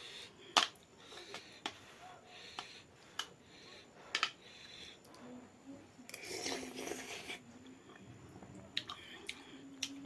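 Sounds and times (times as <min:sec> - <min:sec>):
quiet chewing: 0:06.1 - 0:10.0.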